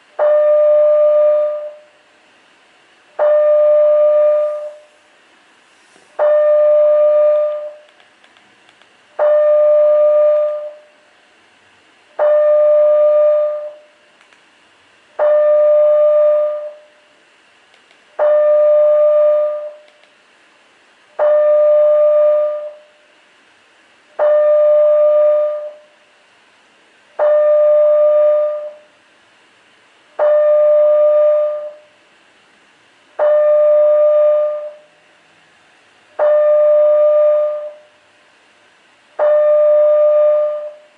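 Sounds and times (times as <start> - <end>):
fire alarm tone: 0.2 - 1.9, 3.2 - 4.9, 6.2 - 7.8, 9.2 - 10.9, 12.2 - 13.9, 15.2 - 17.0, 18.2 - 19.8, 21.2 - 22.9, 24.2 - 25.9, 27.2 - 28.9, 30.2 - 31.9, 33.2 - 34.9, 36.2 - 37.9, 39.2 - 40.9.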